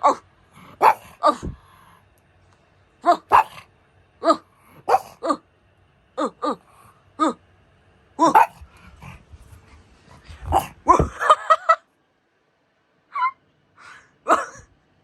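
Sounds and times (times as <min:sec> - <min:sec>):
dog barking and yipping: 0:00.8 - 0:01.3, 0:03.0 - 0:03.6, 0:04.8 - 0:05.3, 0:08.2 - 0:08.7.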